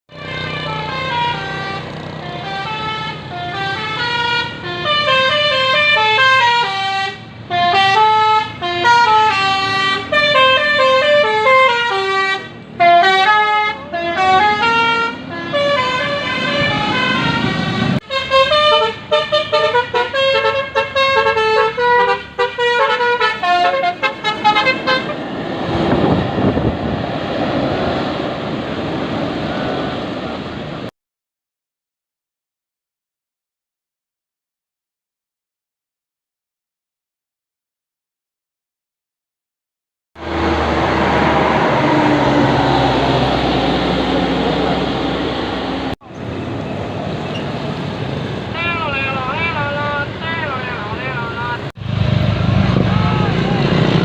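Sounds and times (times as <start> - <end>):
multi-tone bus air horn melody: 0.1 - 25.3
rushing vehicle noise: 0.1 - 30.9, 40.2 - 54.0.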